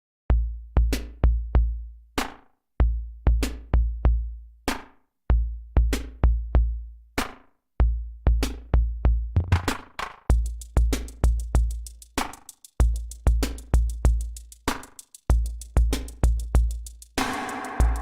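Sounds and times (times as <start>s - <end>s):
electronic drum-machine beat: 9.4s - 18.0s.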